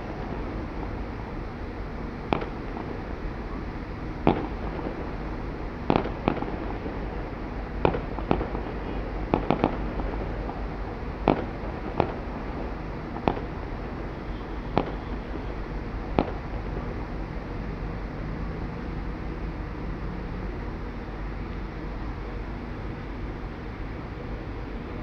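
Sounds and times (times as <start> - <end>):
fireworks bangs: 0.0 - 18.1.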